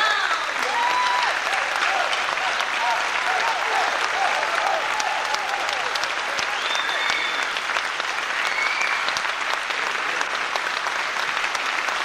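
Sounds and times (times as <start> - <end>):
audience applauding: 0.0 - 12.0
whistles: 6.5 - 7.7, 8.4 - 9.1.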